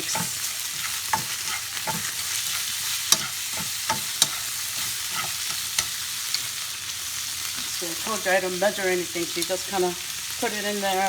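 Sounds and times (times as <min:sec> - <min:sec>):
utensil clicking against pan: 0:00.0 - 0:06.5
shrimp sizzling in a pan: 0:00.0 - 0:11.0.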